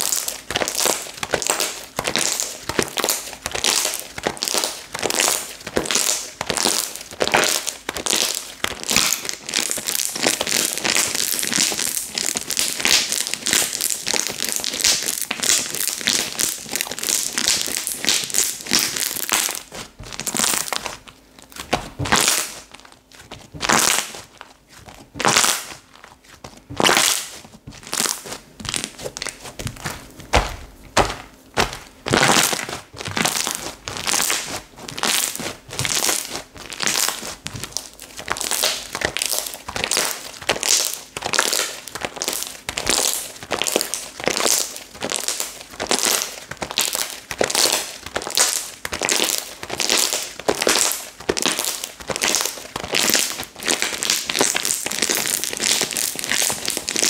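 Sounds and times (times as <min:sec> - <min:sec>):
slime squishing and crackling: 0:00.0 - 0:57.0
slime squelches and pops: 0:26.7 - 0:57.0.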